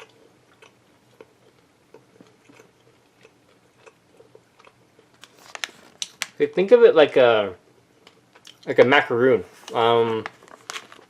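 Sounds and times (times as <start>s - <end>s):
person chewing: 0.0s - 6.2s, 8.0s - 8.7s.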